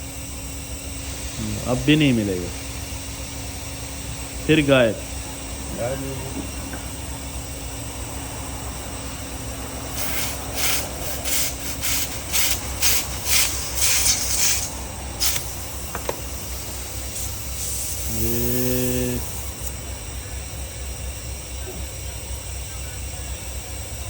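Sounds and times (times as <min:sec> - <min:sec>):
steady low hum: 0:00.0 - 0:24.0
short sharp noisy strokes: 0:10.0 - 0:15.7.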